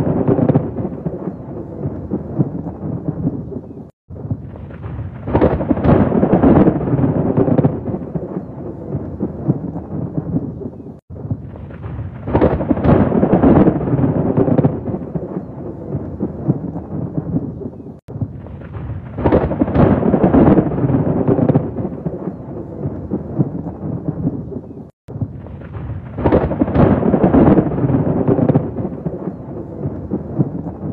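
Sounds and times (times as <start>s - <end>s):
heavy rain: 0.0s - 30.9s
thunder rumbling: 0.0s - 30.9s.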